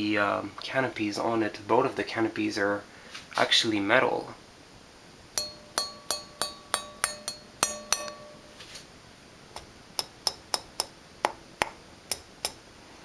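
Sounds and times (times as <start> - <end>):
taps on metal fan canopy: 5.4 - 8.4.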